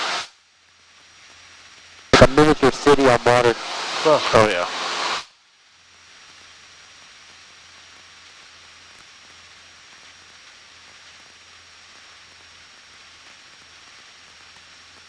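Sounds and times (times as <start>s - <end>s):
steady intercom hiss: 1.2s - 5.2s.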